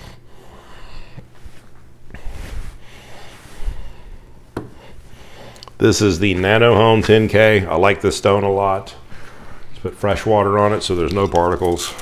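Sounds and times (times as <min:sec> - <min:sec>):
rustling and scraping: 0:01.2 - 0:05.3.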